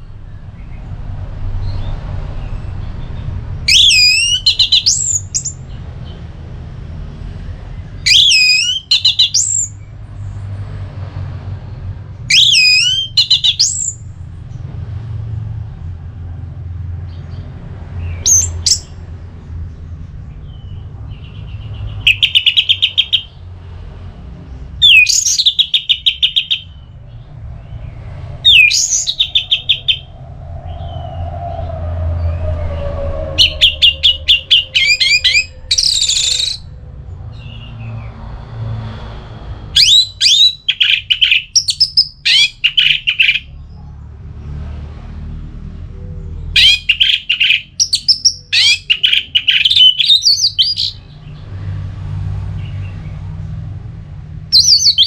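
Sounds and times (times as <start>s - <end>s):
thrush singing whistled phrases: 3.7s - 5.6s, 8.1s - 9.8s, 12.3s - 14.0s, 18.3s - 18.9s, 22.0s - 23.3s, 24.8s - 26.8s, 28.4s - 36.7s, 39.8s - 43.5s, 46.6s - 51.1s, 54.5s - 55.0s
steady low hum: 26.2s - 37.4s.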